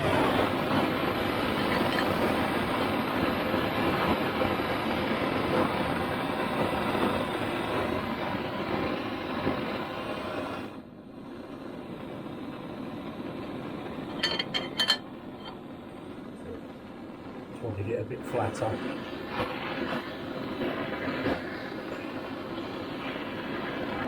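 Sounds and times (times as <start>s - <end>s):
heating tool rushing noise: 0.0s - 3.0s.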